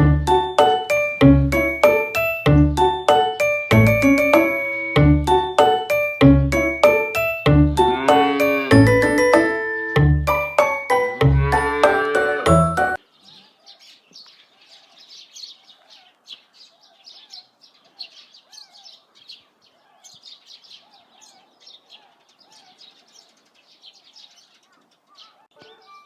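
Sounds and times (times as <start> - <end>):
high chirps: 0.0 - 13.0
music: 0.0 - 13.0
swans calling: 3.9 - 5.6, 7.6 - 13.8.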